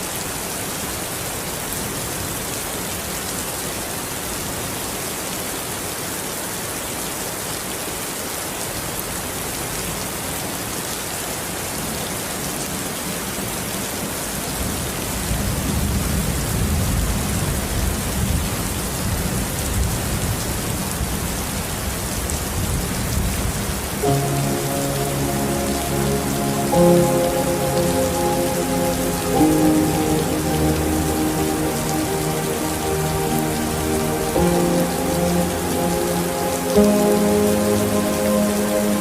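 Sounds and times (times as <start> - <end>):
steady rain falling: 0.0 - 39.0
soft sustained music chords: 24.0 - 39.0.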